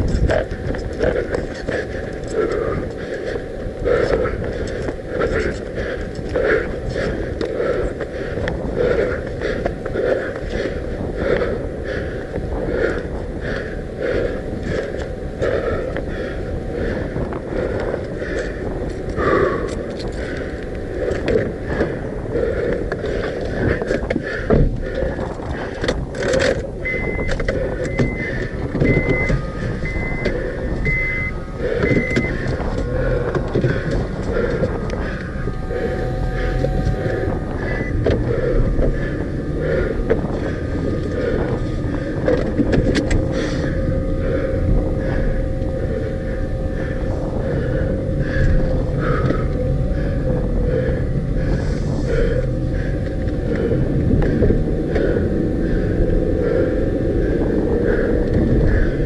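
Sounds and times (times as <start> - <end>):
car engine and road noise: 0.0 - 59.0
fast rhythmic breathing: 0.0 - 59.0
low wind rumble on microphone: 0.0 - 59.0
short electronic beeps: 26.8 - 32.4, 35.3 - 38.1.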